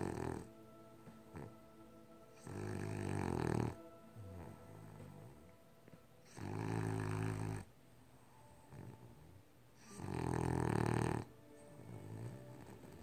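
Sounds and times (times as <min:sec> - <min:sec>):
pet snoring: 0:00.0 - 0:00.5, 0:02.4 - 0:05.4, 0:06.2 - 0:07.7, 0:08.6 - 0:13.0.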